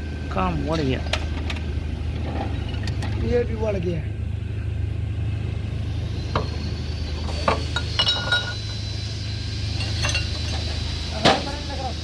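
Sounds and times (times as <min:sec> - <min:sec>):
steady low hum: 0:00.0 - 0:12.0
metal parts and tools clinking: 0:07.4 - 0:08.7, 0:09.8 - 0:10.7.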